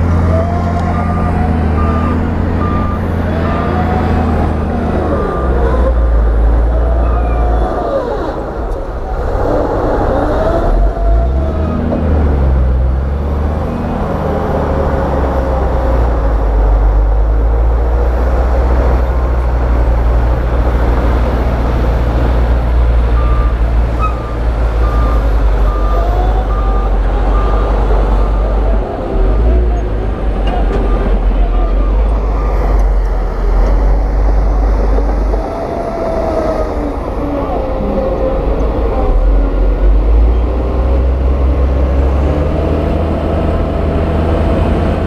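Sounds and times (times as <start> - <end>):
diesel machinery running: 0.0 - 45.0
reversing alarm beeping: 0.3 - 6.1, 23.2 - 28.7
squeals: 7.0 - 8.3.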